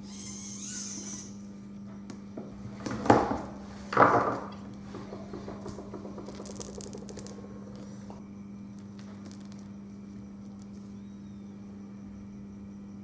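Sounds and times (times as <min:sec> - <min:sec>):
steady low hum: 0:00.0 - 0:13.0
plastic parts rattling: 0:05.9 - 0:07.9.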